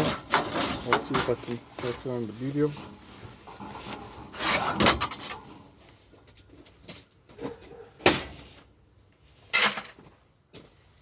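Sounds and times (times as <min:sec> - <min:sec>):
scrap metal scraping: 0:00.0 - 0:06.2.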